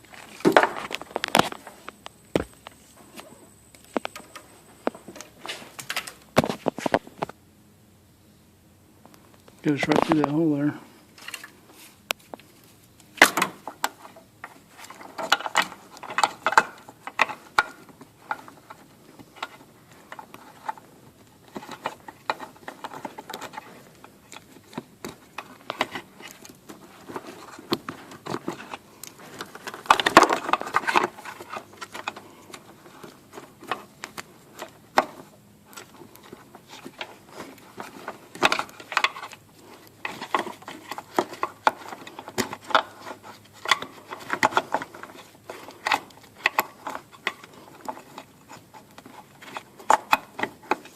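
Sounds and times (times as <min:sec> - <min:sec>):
tools and parts rattling: 0:09.6 - 0:11.6, 0:12.3 - 0:50.9.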